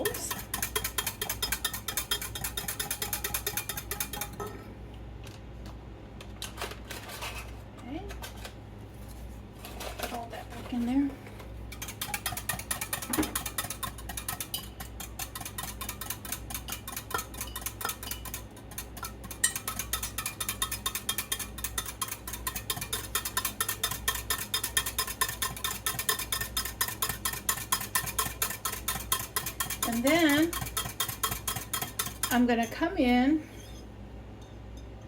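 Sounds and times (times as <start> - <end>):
utensil clinking in glass dish: 0.0 - 4.5, 11.7 - 32.8.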